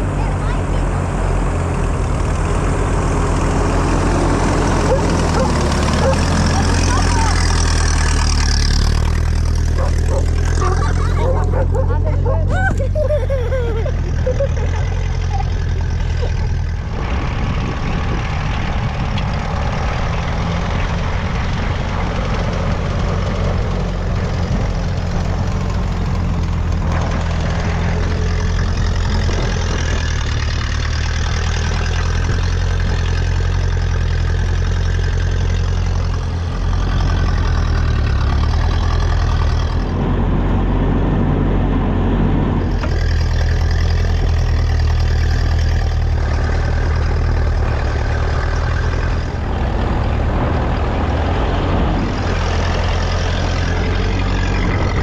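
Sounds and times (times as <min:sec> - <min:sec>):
tractor engine running: 0:00.0 - 0:55.0.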